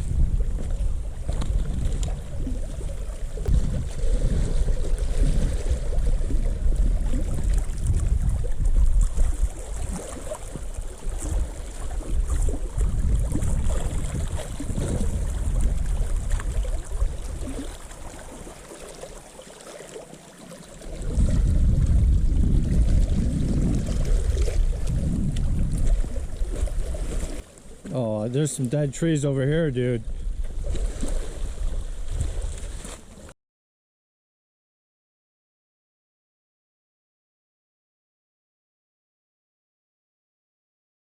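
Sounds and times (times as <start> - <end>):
wind buffeting microphone: 0.0 - 18.4, 20.9 - 27.4, 29.5 - 32.9.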